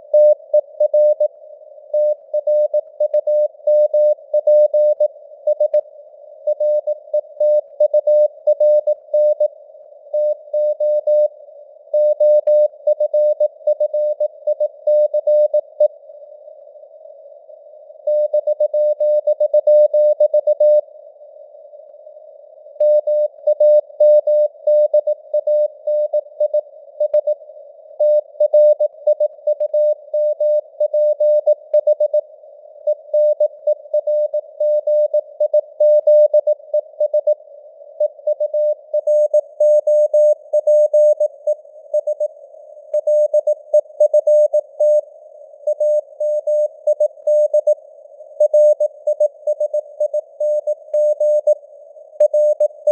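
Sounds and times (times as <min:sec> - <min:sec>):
morse code tone: 0:52.2 - 0:52.9.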